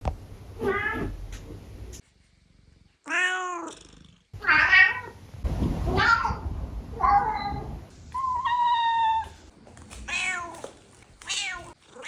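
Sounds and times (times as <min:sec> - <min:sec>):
cat meowing: 0:03.1 - 0:05.2.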